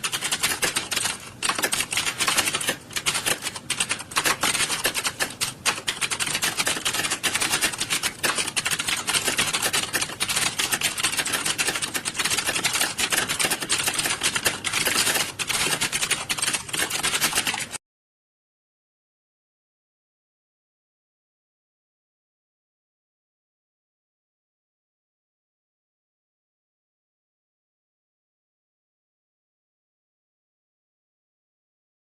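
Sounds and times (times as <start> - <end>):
many keyboards typing: 0.0 - 17.8.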